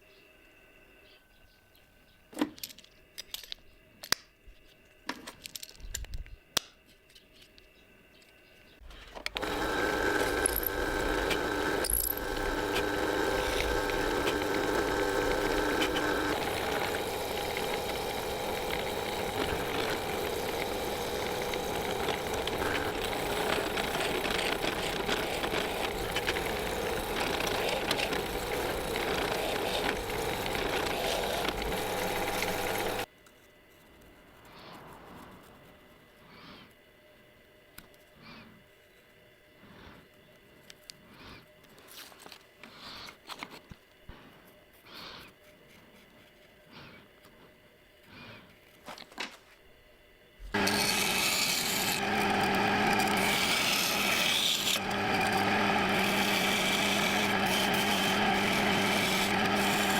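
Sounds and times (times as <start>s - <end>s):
power tool motor running: 9.3s - 33.1s, 50.4s - 59.9s.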